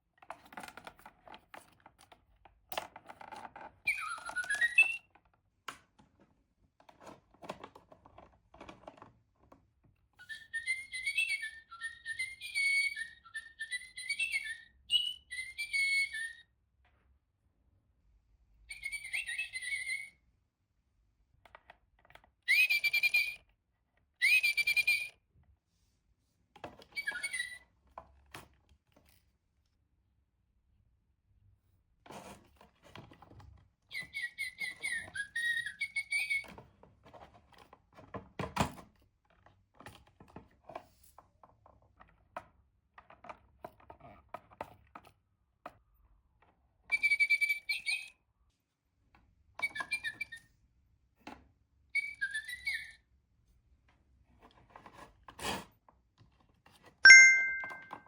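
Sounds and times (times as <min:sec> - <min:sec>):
electronic toy bird chirping: 0:03.9 - 0:05.0, 0:10.2 - 0:16.4, 0:18.7 - 0:20.2, 0:22.5 - 0:23.4, 0:24.2 - 0:25.2, 0:27.0 - 0:27.6, 0:34.0 - 0:36.5, 0:46.9 - 0:48.1, 0:52.0 - 0:53.0, 0:57.1 - 0:58.0.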